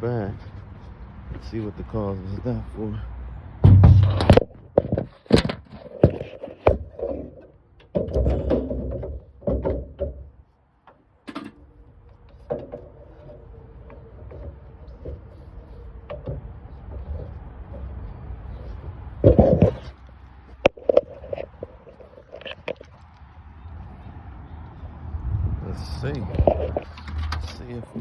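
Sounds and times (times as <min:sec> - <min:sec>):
car trunk lid clunks: 0:03.6 - 0:04.4.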